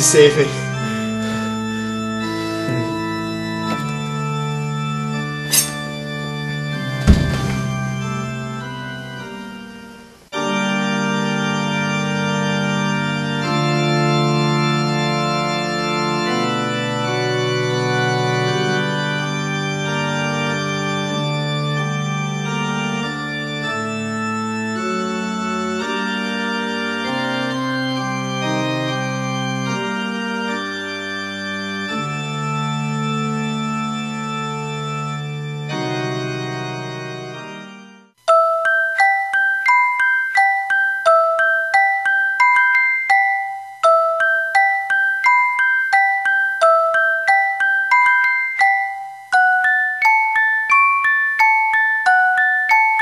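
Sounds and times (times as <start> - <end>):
organ chords: 0.0 - 53.0
ringing tone: 38.3 - 53.0.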